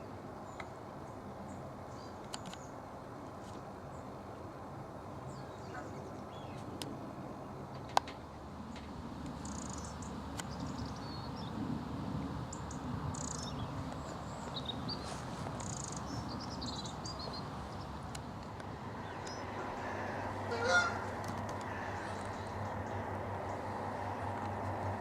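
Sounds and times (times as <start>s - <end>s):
small birds chirping: 9.3s - 11.6s, 12.4s - 24.7s.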